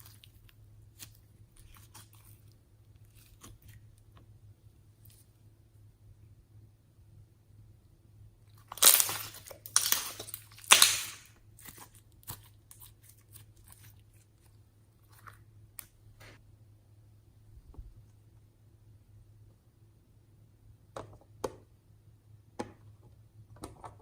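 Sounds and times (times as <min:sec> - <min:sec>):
slime crunching and crackling: 0:00.0 - 0:04.0, 0:08.6 - 0:15.9.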